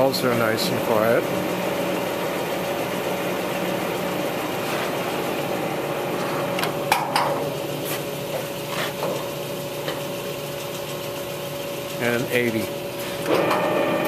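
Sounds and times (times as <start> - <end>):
lathe humming: 0.0 - 14.0.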